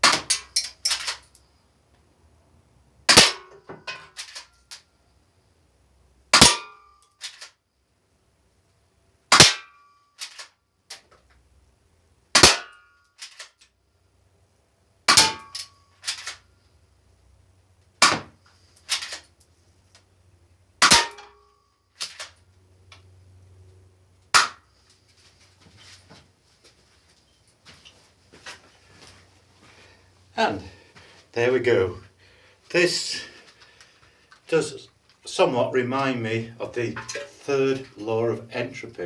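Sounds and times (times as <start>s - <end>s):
toy pistol shots cracking: 0.0s - 1.2s, 3.1s - 3.5s, 9.3s - 10.5s, 12.4s - 13.5s, 15.1s - 16.4s, 18.0s - 19.2s, 20.8s - 21.4s, 22.0s - 22.4s, 24.4s - 24.6s.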